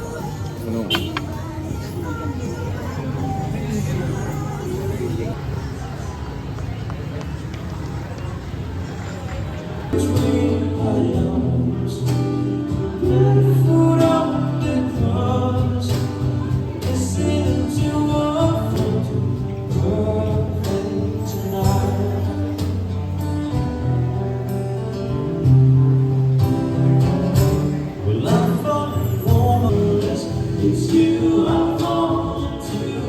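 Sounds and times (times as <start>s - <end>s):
background music with vocal: 10.0s - 22.9s, 28.1s - 33.0s.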